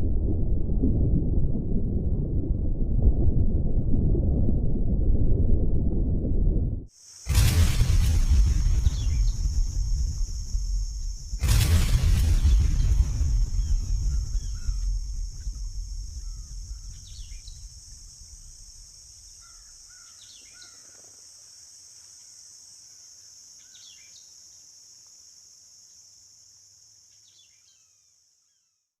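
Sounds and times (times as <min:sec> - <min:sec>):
low rumble: 0:00.0 - 0:19.7
high insect drone: 0:06.9 - 0:28.6
bird-like chirps: 0:08.8 - 0:09.5, 0:12.4 - 0:17.8, 0:19.3 - 0:21.1.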